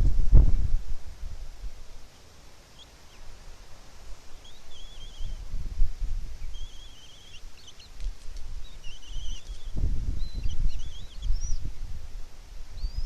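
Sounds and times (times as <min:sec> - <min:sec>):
songbirds singing: 0:01.8 - 0:13.0.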